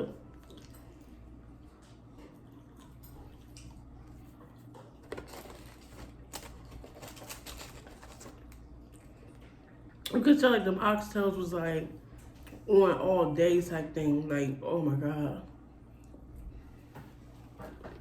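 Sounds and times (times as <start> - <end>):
person chewing: 0.2 - 1.2, 1.8 - 10.1
small crackles: 4.4 - 9.5.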